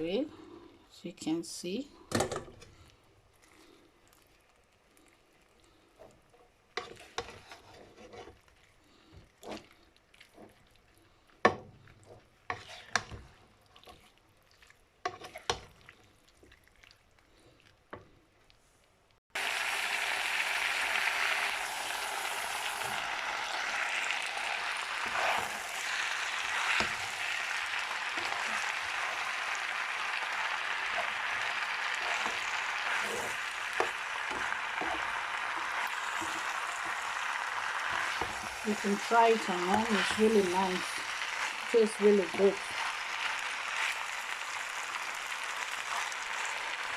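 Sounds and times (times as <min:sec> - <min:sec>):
frying sizzle: 0:06.0 - 0:08.1, 0:11.4 - 0:15.8, 0:19.3 - 0:46.9.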